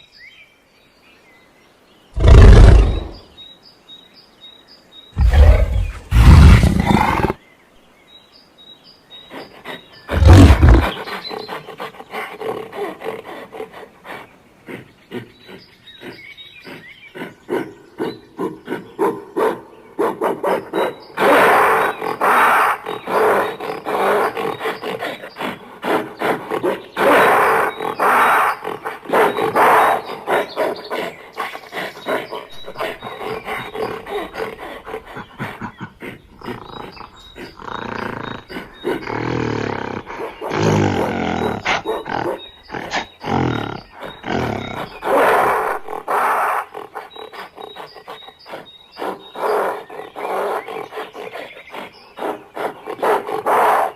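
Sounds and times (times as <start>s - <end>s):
gorilla roaring: 2.2s - 3.2s, 5.2s - 7.4s, 10.1s - 11.1s, 32.0s - 47.2s.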